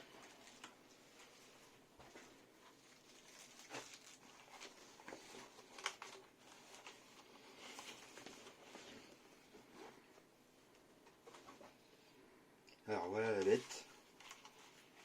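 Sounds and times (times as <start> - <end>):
packaging rustling and clicking: 2.7 - 8.7.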